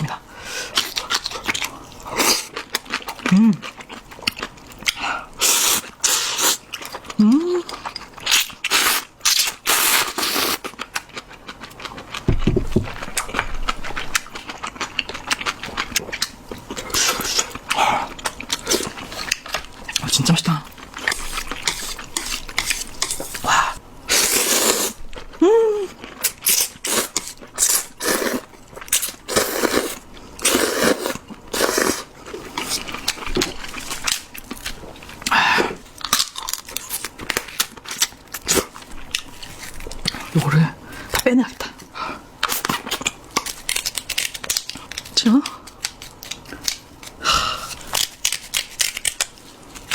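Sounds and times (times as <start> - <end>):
chewing with crunching clicks: 0.8 - 5.1, 10.6 - 23.4, 32.4 - 40.4, 41.0 - 49.9
chewing: 10.2 - 23.5, 25.1 - 40.5
noodle slurping: 26.5 - 28.5, 29.2 - 32.8.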